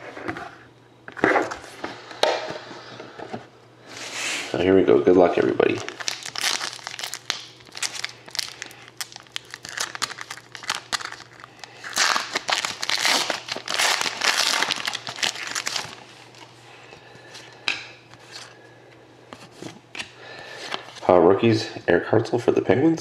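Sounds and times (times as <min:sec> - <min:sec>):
packaging torn and crinkled: 0:05.6 - 0:16.4.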